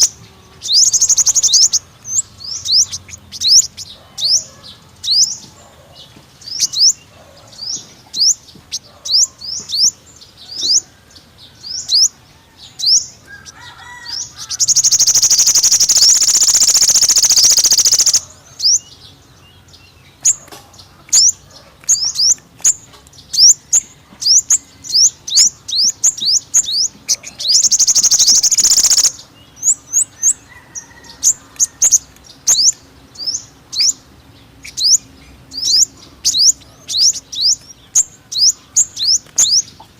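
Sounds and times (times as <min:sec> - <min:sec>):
bird chirps: 0:00.0 - 0:10.9, 0:11.6 - 0:19.1, 0:20.0 - 0:39.9
fast high bird trills: 0:14.4 - 0:18.3, 0:26.6 - 0:29.2.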